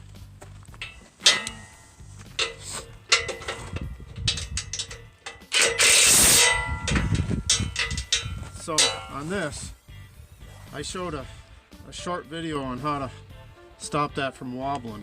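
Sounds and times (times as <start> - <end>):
metal tools clanking: 0.7 - 9.6.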